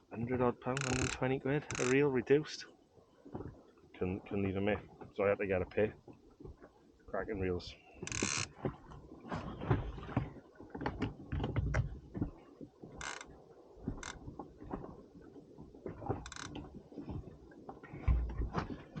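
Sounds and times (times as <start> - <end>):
fishing reel clicking: 0.8 - 2.0.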